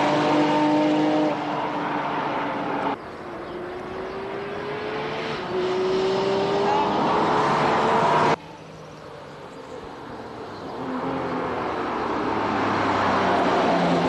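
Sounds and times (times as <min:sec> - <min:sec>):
car engine at high revs: 0:00.0 - 0:08.4.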